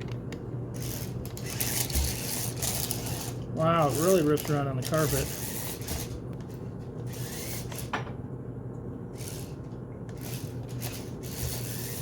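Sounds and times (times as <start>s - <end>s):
toy tracks rubbing on carpet: 0.8s - 6.2s, 10.2s - 12.0s
small electric motors humming: 0.8s - 7.9s, 9.1s - 12.0s.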